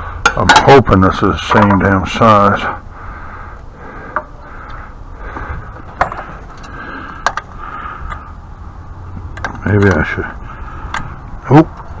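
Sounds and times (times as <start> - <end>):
hand tools clicking and knocking: 5.9 - 7.5, 9.3 - 10.1.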